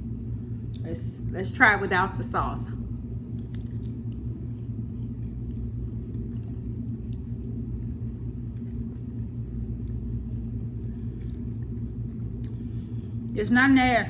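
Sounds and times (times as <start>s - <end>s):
low rumble with hum: 0.0s - 14.0s
person chewing: 3.3s - 7.5s, 10.9s - 12.7s.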